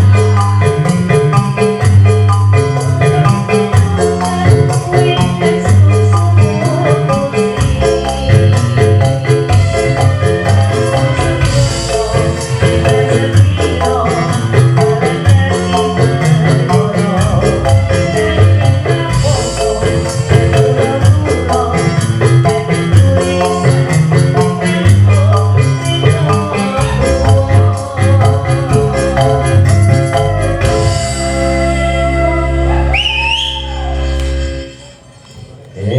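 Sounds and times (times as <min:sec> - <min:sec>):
drum and tambourine beat: 0:00.0 - 0:31.3
bass line: 0:00.0 - 0:34.9
metallophone melody: 0:00.1 - 0:14.7.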